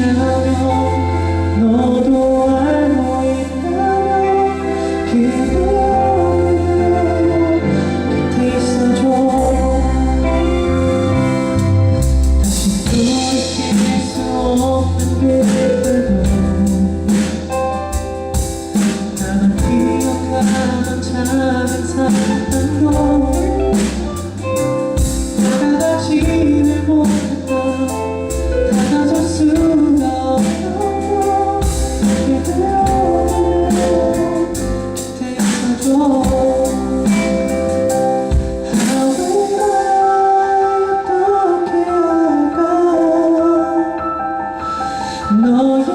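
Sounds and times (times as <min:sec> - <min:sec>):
bass: 0:00.0 - 0:45.9
keyboard: 0:00.0 - 0:45.9
man singing lead vocal: 0:00.0 - 0:45.9
steady drum beat: 0:11.5 - 0:40.0.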